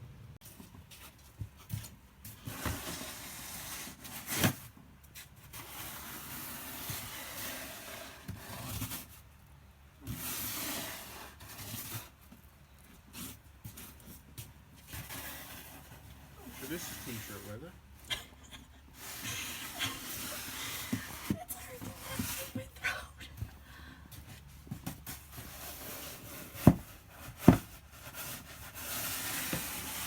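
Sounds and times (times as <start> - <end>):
snow shovel scraping snow: 15.2 - 17.6, 19.0 - 22.6, 28.2 - 30.0.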